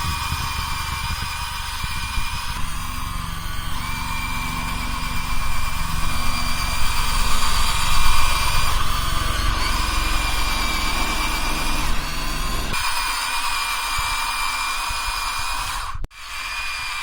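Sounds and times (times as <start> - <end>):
low rumble: 0.0 - 12.8
electric gear motors whining: 0.0 - 17.0.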